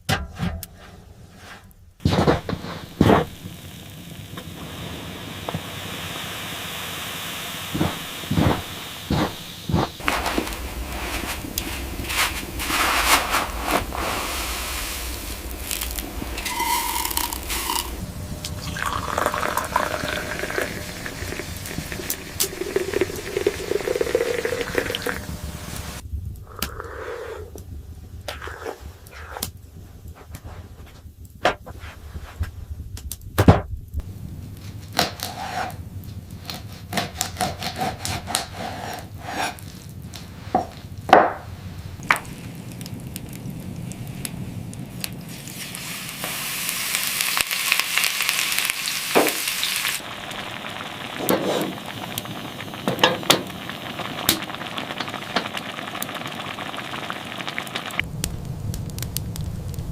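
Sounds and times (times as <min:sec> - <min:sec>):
loud hiss: 0:02.0 - 0:26.0, 0:41.4 - 0:59.9.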